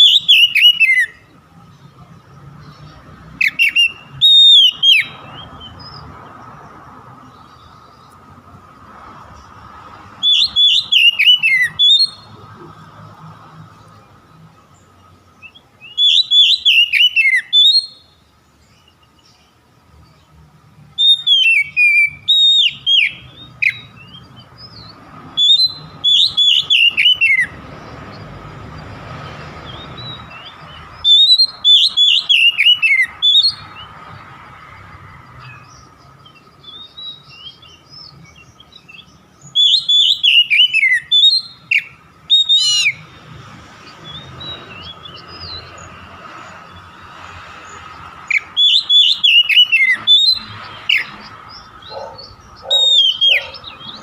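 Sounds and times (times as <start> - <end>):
bird singing whistled notes: 0.0 - 1.8, 2.5 - 6.2, 10.2 - 12.6, 14.8 - 20.2, 20.9 - 28.2, 29.6 - 34.0, 35.4 - 43.1, 43.8 - 47.0, 47.6 - 54.0.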